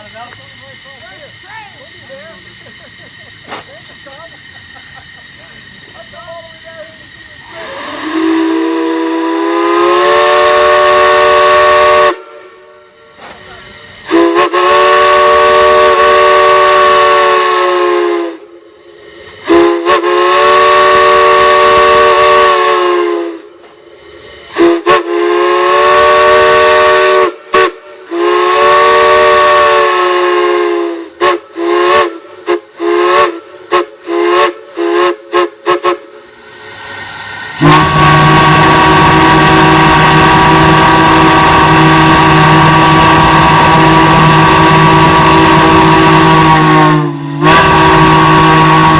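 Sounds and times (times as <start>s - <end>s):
large whistle blasts: 7.5s - 13.0s, 14.1s - 18.5s, 19.4s - 23.5s, 24.6s - 36.1s, 37.6s - 48.9s.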